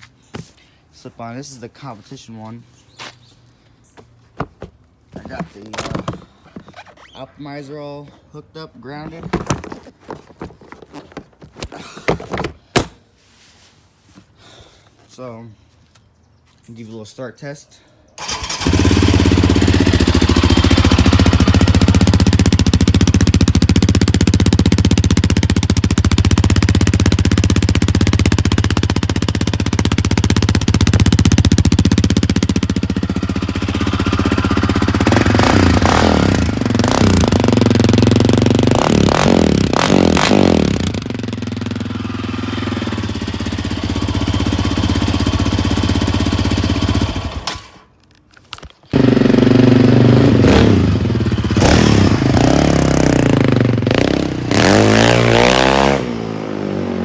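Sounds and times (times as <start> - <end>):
engine idling and revving: 18.2 - 47.8, 48.9 - 57.0.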